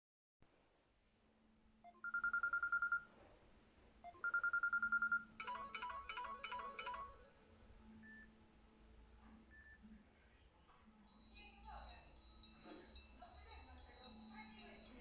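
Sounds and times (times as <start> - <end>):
quick ringtone melody: 1.9 - 3.1, 4.1 - 7.3
fast-pulsing phone ring: 2.0 - 3.0, 4.2 - 7.3.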